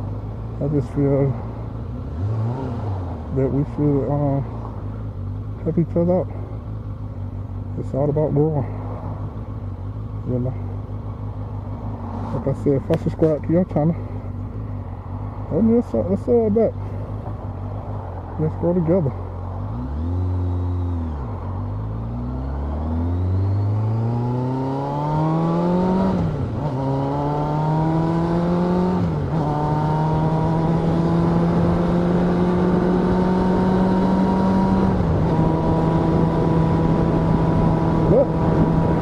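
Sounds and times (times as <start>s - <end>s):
motorcycle accelerating through gears: 0.6s - 7.7s, 19.2s - 39.0s.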